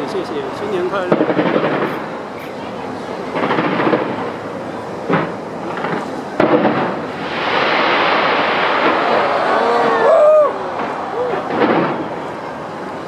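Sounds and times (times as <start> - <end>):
fireworks crackle and rumble: 0.0 - 13.0
firework bang: 1.0 - 2.1, 3.3 - 4.4, 5.0 - 12.5.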